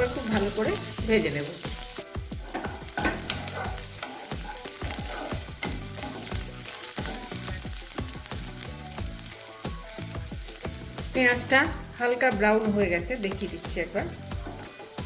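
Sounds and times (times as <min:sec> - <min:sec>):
spatula stirring in a pan: 0:00.0 - 0:11.2, 0:14.1 - 0:15.0
onions sizzling in hot fat: 0:00.0 - 0:15.0.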